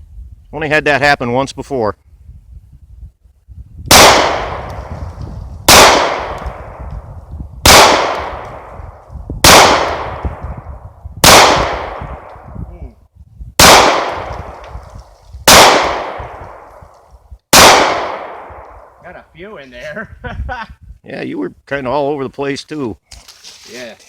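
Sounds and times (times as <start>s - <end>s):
pistol shots echoing: 3.9s - 4.8s, 5.7s - 6.8s, 7.6s - 8.7s, 9.4s - 10.4s, 11.2s - 12.3s, 13.6s - 14.6s, 15.5s - 16.7s, 17.5s - 18.7s.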